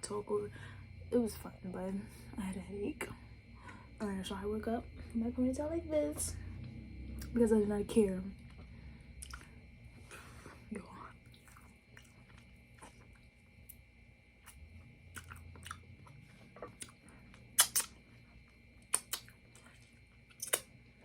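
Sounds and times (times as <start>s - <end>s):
chewing with wet mouth clicks: 8.4s - 9.6s, 11.1s - 13.8s, 14.4s - 20.8s.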